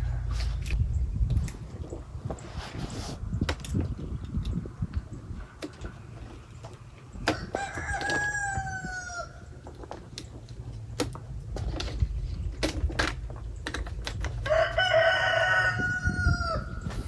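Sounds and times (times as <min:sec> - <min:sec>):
rooster crowing: 0:07.3 - 0:09.4, 0:14.4 - 0:16.9.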